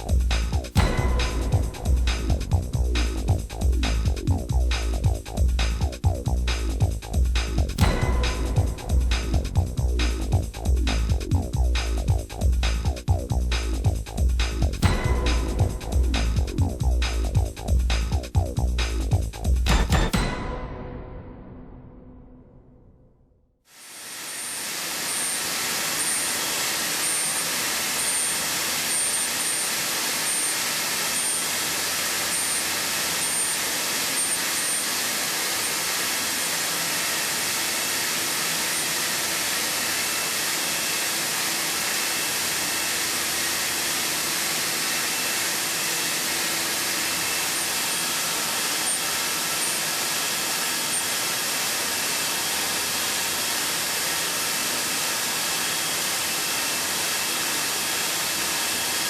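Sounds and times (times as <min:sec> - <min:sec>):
machine milling steel hiss: 0:23.7 - 0:59.0.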